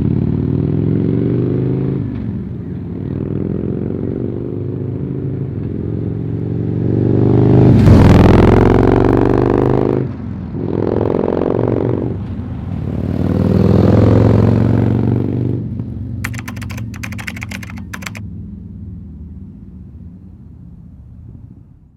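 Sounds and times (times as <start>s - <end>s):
rapid clicking: 16.3s - 18.2s.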